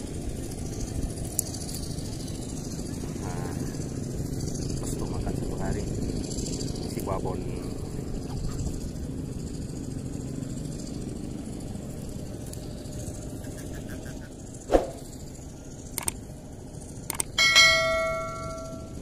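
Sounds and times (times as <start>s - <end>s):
low background rumble: 0.0s - 19.0s
sharp thump: 14.7s - 15.0s
light clicks: 15.9s - 16.2s, 17.1s - 17.3s
metal object struck and ringing: 17.4s - 19.0s.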